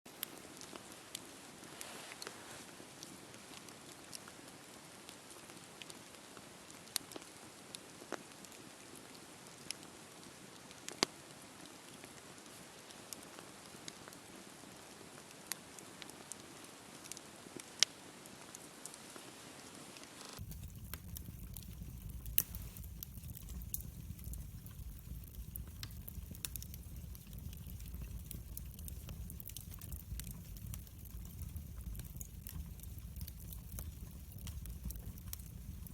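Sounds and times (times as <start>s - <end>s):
campfire crackling and popping: 6.7s - 8.8s, 10.7s - 11.2s, 20.4s - 35.9s.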